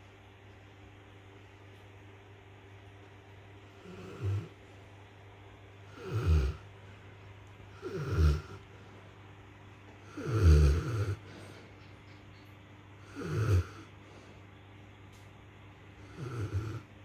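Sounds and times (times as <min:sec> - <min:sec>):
dog snoring: 0:03.8 - 0:04.6, 0:05.9 - 0:06.7, 0:07.7 - 0:08.9, 0:10.0 - 0:11.8, 0:13.0 - 0:14.3, 0:16.0 - 0:16.9.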